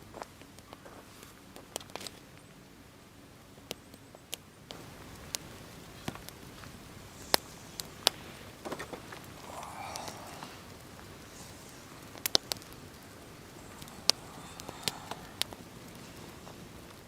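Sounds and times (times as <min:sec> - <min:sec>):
faint steady hiss: 0:00.0 - 0:17.0
campfire crackling and popping: 0:03.6 - 0:17.0.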